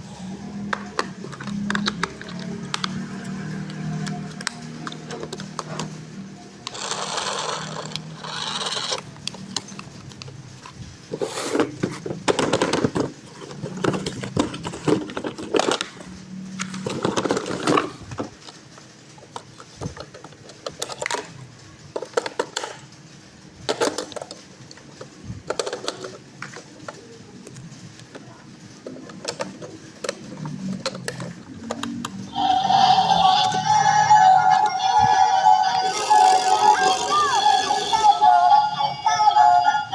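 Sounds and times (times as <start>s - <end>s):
toy handling clicks and scraping: 0.6s - 38.6s
toy car motor whirring: 6.6s - 10.2s, 30.1s - 39.9s.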